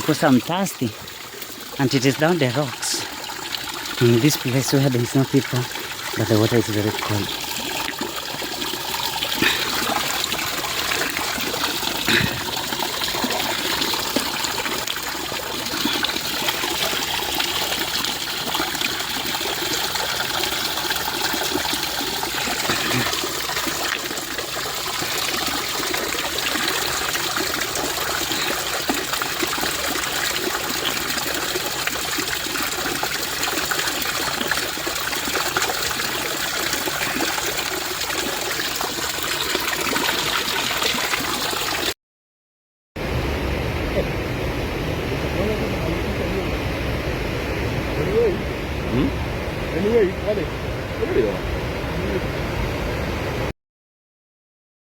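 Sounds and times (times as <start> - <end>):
waterfall splashing over rocks: 0.0 - 41.9.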